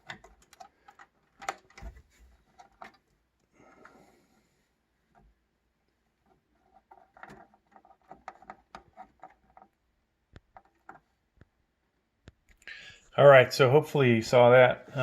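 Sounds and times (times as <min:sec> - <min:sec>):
plastic connector clicks and rustles: 0:00.0 - 0:03.1.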